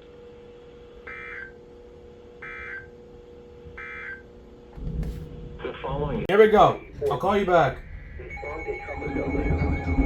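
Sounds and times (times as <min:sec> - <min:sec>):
warbling digital data tones: 0:06.4 - 0:10.0.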